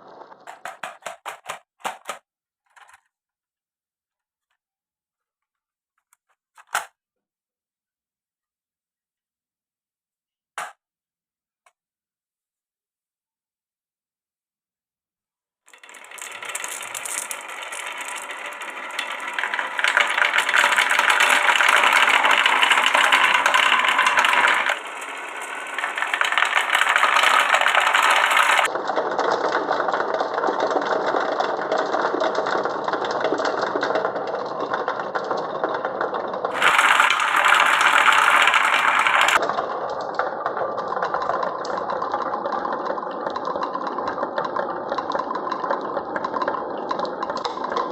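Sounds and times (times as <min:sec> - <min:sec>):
marbles rattling down wooden run: 0:15.7 - 0:47.9.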